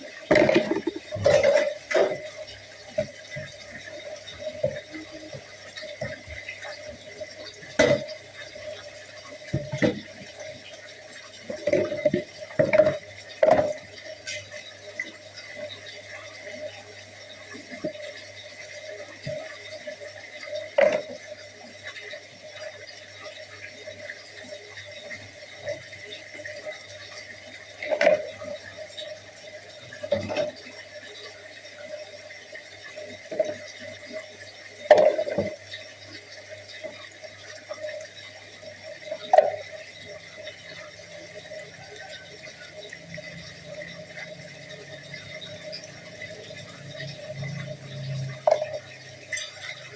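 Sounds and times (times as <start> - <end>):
tap water running into sink: 0.0 - 49.9
dishes clinking: 0.3 - 2.2, 48.5 - 49.9.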